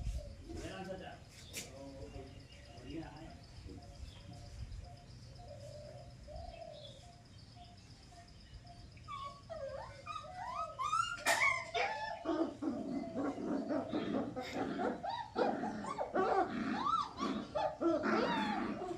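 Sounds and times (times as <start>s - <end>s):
puppies whining and yelping: 8.7s - 18.9s.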